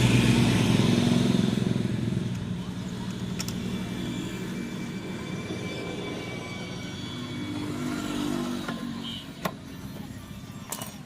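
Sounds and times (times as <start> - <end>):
vehicle engine running: 0.0 - 8.8.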